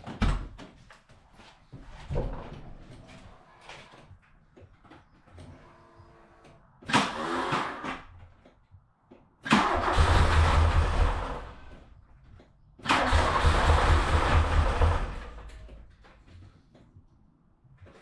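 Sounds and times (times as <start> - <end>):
car engine cranking on starter: 9.5 - 11.7, 12.8 - 15.5.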